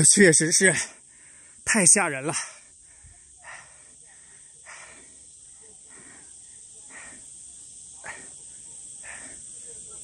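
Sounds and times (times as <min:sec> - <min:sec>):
insects buzzing: 0:00.0 - 0:10.0
heavy breathing: 0:02.3 - 0:09.6.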